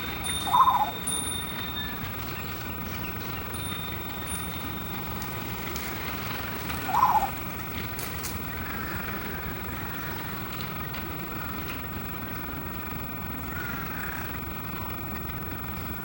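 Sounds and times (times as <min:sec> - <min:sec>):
steady background noise: 0:00.0 - 0:16.0
crow calls: 0:00.2 - 0:01.0, 0:06.8 - 0:07.4, 0:08.5 - 0:10.3, 0:13.4 - 0:14.4.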